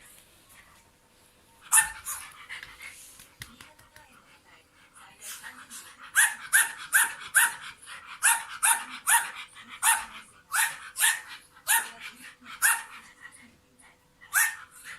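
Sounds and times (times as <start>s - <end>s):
young dog barking: 12.6s - 12.9s.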